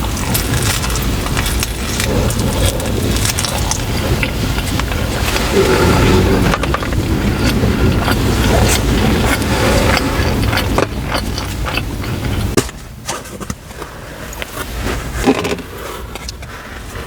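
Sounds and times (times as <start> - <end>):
chewing with wet mouth smacks: 0.0 - 12.7
low rumble: 0.0 - 17.0.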